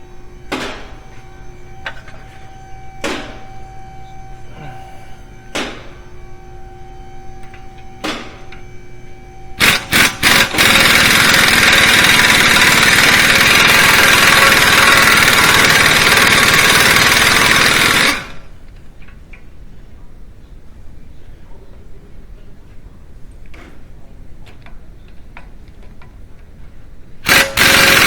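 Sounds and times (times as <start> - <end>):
impact gun hammering: 3.0 - 3.4, 5.5 - 5.9.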